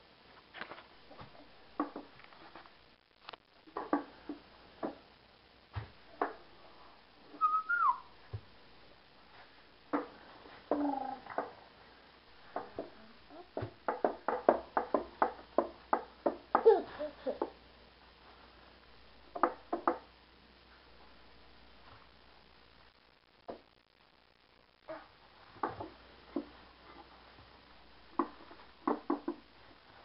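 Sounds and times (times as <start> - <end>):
falling whistle-like note: 7.4 - 8.0.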